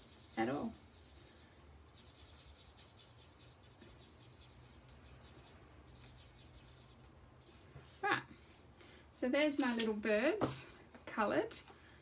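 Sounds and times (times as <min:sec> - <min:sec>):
marker tip scratching on card: 0:00.0 - 0:07.6.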